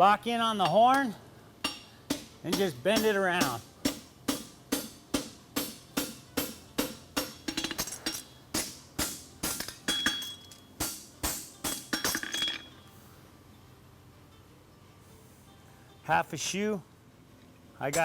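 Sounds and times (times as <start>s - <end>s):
hammer ringing on metal bar: 1.6s - 7.6s, 8.5s - 12.7s.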